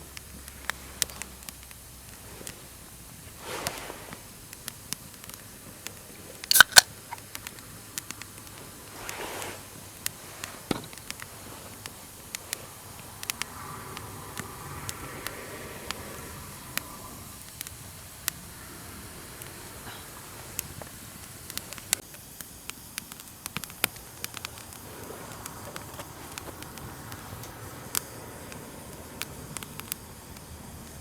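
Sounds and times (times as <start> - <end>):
campfire crackling: 0.0 - 31.0
fire pops and snaps: 0.0 - 31.0
soft rushes of noise: 0.4 - 4.6, 8.5 - 22.0.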